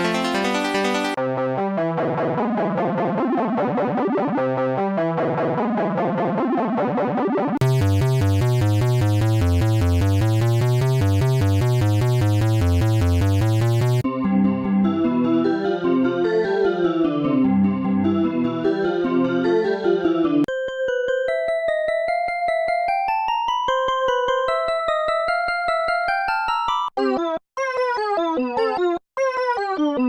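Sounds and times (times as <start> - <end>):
synthesizer music: 0.0 - 1.3, 7.6 - 14.1.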